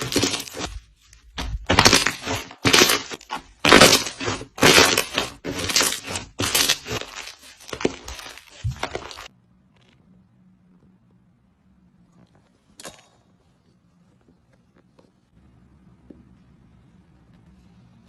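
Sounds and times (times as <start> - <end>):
crunchy slime crackling: 0.0 - 9.3.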